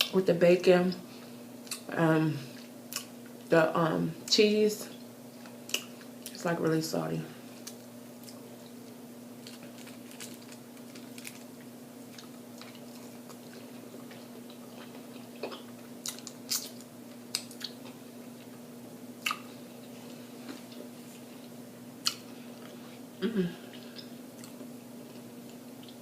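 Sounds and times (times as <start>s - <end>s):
steady low hum: 0.0s - 26.0s
person chewing open-mouthed: 7.6s - 18.6s, 19.2s - 20.0s, 23.6s - 26.0s.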